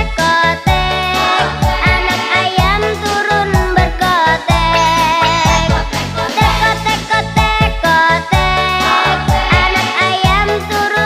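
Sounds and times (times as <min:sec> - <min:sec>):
bright melody: 0:00.7 - 0:07.4
bass drum beat: 0:00.7 - 0:10.5.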